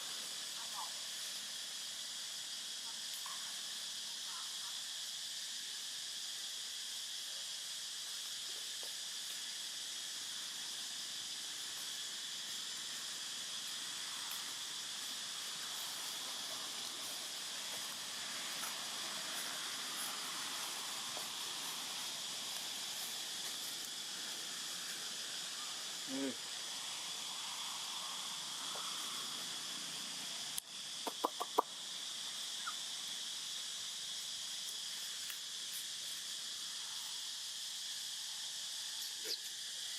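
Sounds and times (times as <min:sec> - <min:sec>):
insect drone: 0:00.0 - 0:39.9.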